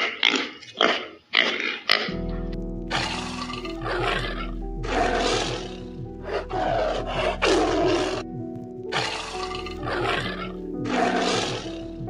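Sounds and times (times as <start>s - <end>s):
background music: 2.1s - 12.0s
big cat roaring and growling: 2.9s - 8.2s.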